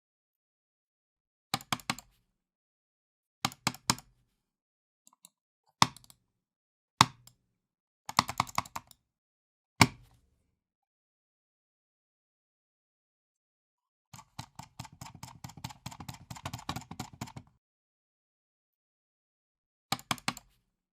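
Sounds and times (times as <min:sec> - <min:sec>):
computer mouse clicks: 0:01.6 - 0:02.1, 0:05.1 - 0:06.2, 0:14.2 - 0:17.5, 0:19.9 - 0:20.6.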